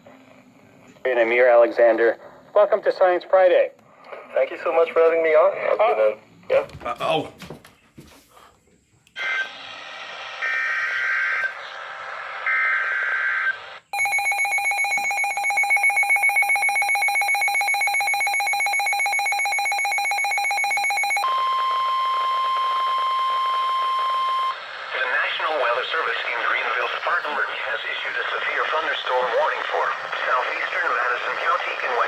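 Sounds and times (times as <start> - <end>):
steady warning alarm tone: 14.0 - 24.6.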